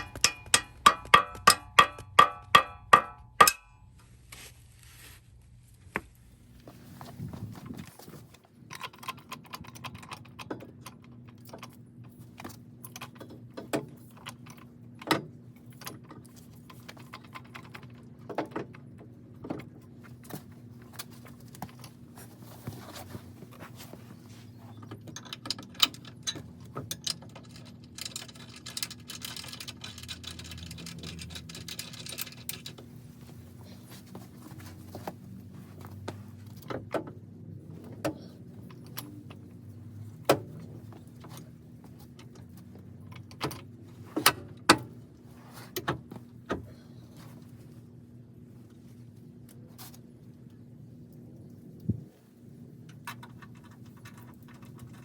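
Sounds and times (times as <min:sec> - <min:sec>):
metallic clinks and rattles: 0:00.0 - 0:03.7, 0:25.1 - 0:32.9.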